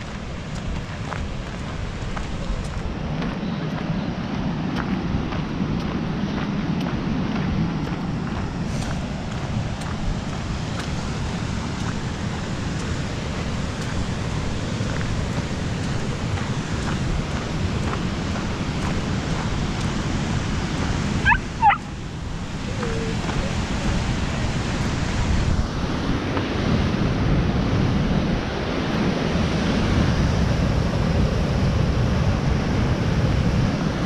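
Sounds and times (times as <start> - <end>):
waterfall rushing: 0.0 - 7.1, 7.8 - 34.0
wind on microphone: 0.0 - 34.0
short high-pitched calls: 21.2 - 21.9.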